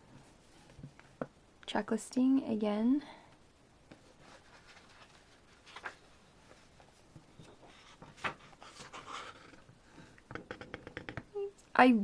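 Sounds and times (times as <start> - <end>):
paper booklet page rustling: 3.9 - 9.6.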